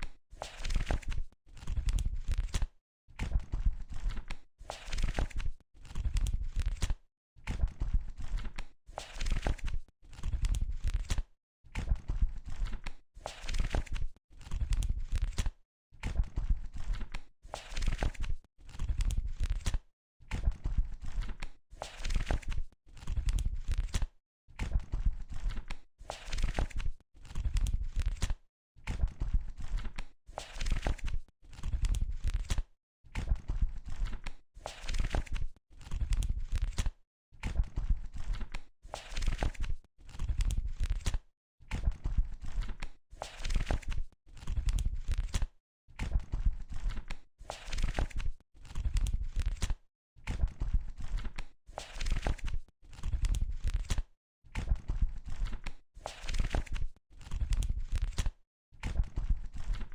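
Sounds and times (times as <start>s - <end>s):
book pages turning: 0.5s - 2.6s, 4.8s - 6.0s, 26.2s - 27.4s, 30.4s - 32.6s, 34.0s - 36.9s, 38.2s - 41.2s, 42.5s - 45.4s, 46.8s - 49.8s, 51.0s - 54.0s, 55.3s - 58.3s.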